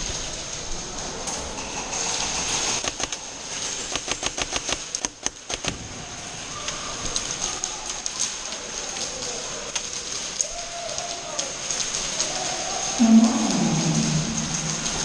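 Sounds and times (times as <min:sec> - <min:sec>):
steady hiss: 0:00.0 - 0:15.0
airsoft guns firing: 0:02.8 - 0:03.2.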